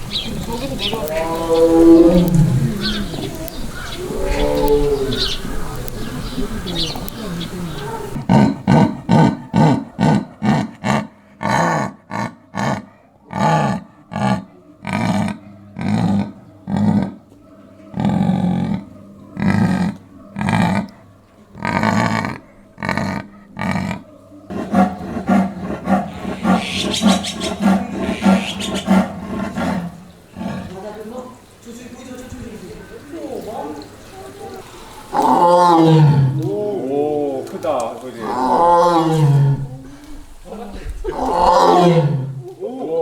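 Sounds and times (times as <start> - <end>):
big cat roaring: 0.1 - 17.2, 17.9 - 21.0, 21.6 - 31.1, 34.5 - 40.2, 41.0 - 43.0.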